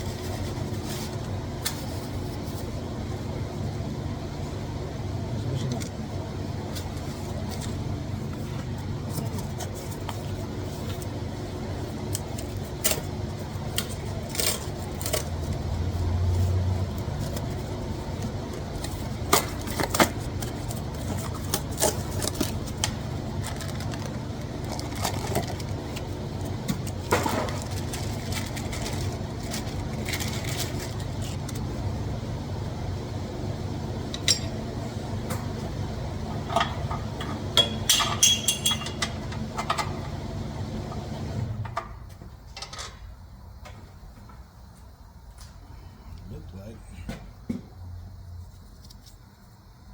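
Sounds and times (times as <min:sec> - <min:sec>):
steady low hum: 0:00.0 - 0:49.9
hand tools clinking on metal: 0:37.6 - 0:39.1.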